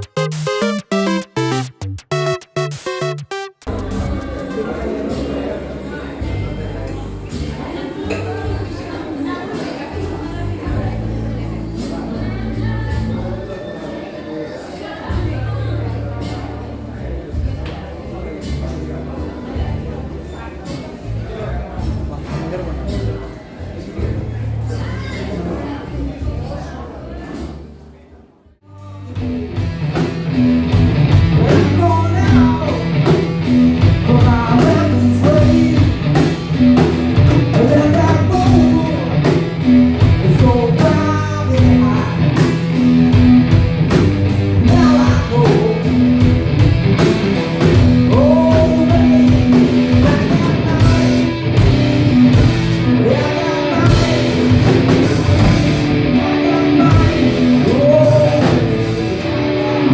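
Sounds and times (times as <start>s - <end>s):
live rock band playing: 0.0s - 7.4s, 29.1s - 59.9s
person singing: 28.7s - 29.2s, 34.1s - 36.0s, 44.7s - 45.9s, 48.1s - 51.2s, 56.2s - 59.2s.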